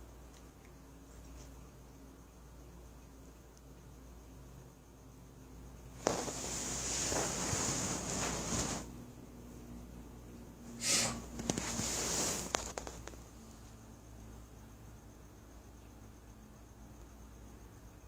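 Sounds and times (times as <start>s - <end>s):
snorting hissing nasal breaths: 10.7s - 12.6s.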